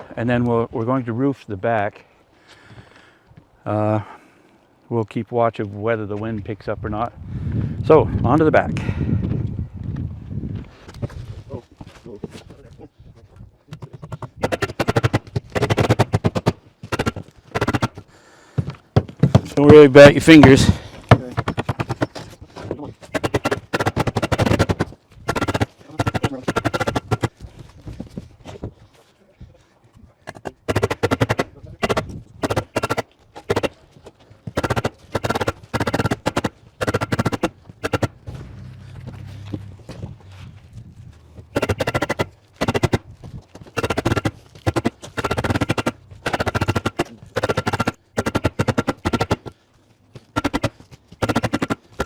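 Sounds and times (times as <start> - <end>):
power driver rapid clicking: 13.7 - 18.1, 20.2 - 22.2, 23.1 - 27.4, 30.3 - 33.7, 34.5 - 38.2, 41.6 - 43.0, 43.8 - 49.6, 50.4 - 52.0.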